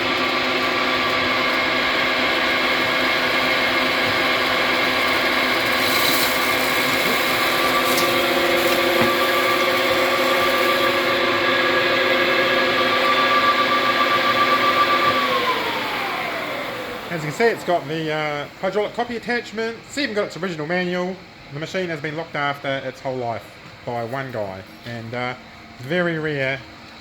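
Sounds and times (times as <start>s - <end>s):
lathe gear whine: 0.0s - 19.2s.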